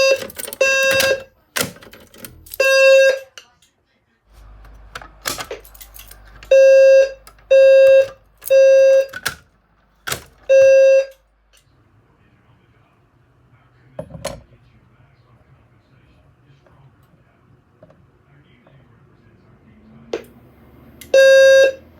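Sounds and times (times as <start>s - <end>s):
fire alarm buzzy beeps: 0.0s - 1.3s, 2.5s - 3.3s, 6.4s - 9.4s, 10.4s - 11.2s, 21.0s - 21.9s.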